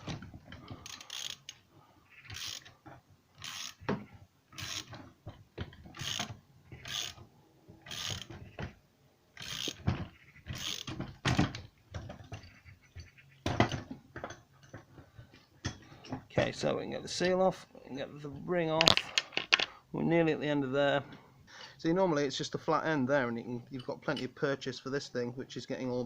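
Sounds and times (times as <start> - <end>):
metallic clicks and scrapes: 0.0 - 8.7, 9.4 - 16.2, 18.8 - 19.8.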